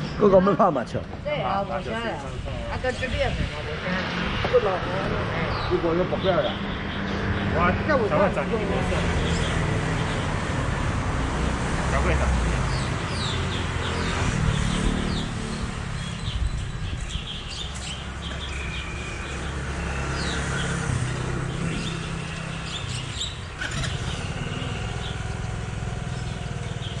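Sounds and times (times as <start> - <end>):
birdlike chirps: 12.4 - 27.0.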